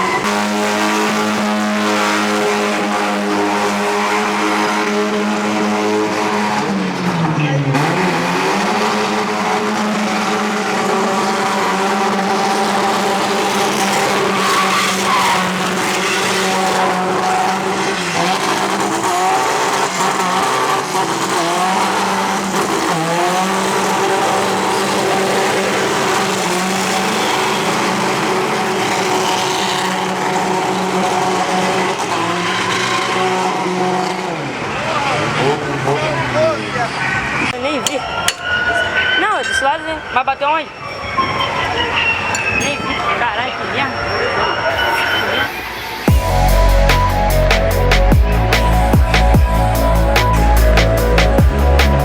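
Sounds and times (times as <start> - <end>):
car engine revving high: 0.0 - 37.6, 45.6 - 52.0
tyres squealing: 0.0 - 52.0.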